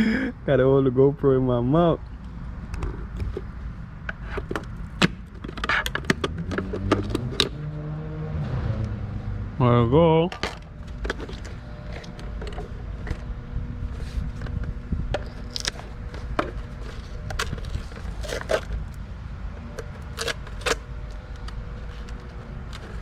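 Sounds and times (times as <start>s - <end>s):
steady low rumble: 8.8s - 23.0s.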